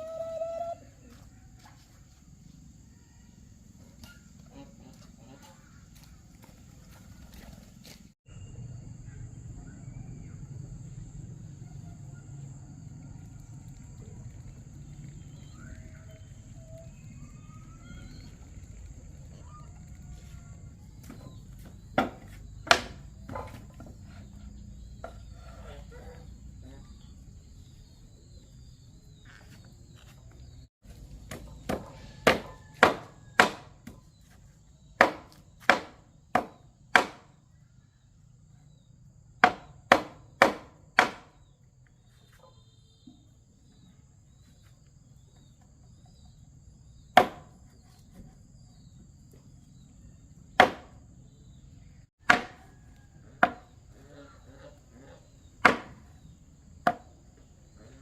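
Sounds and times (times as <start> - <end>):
sharp chopping strikes: 31.3 - 34.0, 35.0 - 37.3, 39.4 - 41.3, 50.6 - 51.0, 55.6 - 56.0.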